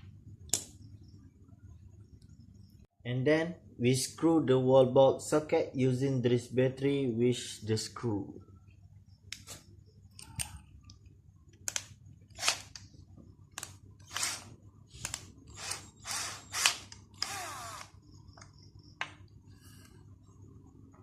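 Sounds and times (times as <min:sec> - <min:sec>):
cordless drill driving screw: 0:14.0 - 0:17.9.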